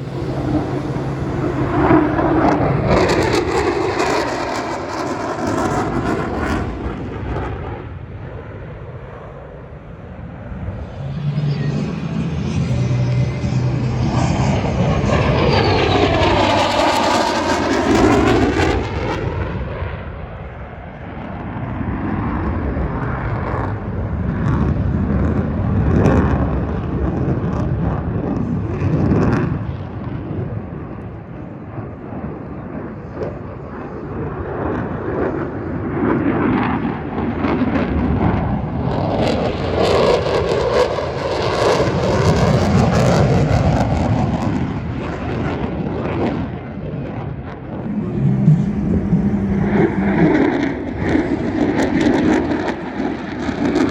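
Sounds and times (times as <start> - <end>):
jet aircraft passing overhead: 0.0 - 25.2, 47.5 - 53.9.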